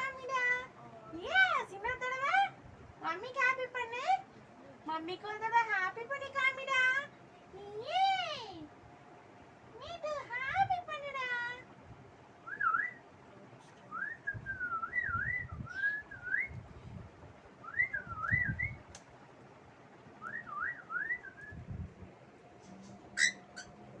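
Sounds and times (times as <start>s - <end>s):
cockatiel whistling: 23.2s - 23.7s.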